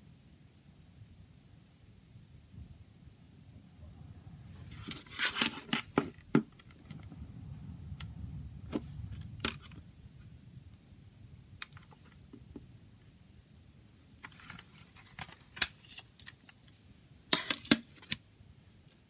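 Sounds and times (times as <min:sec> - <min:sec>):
plastic rustling and scraping: 0:04.6 - 0:07.1, 0:14.2 - 0:18.2
plastic case clicks: 0:17.3 - 0:18.2.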